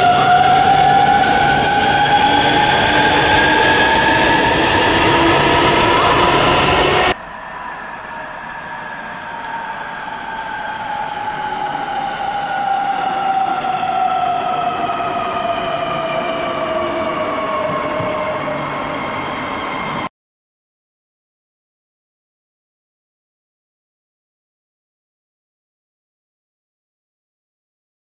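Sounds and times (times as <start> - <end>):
train running noise: 0.0 - 20.1.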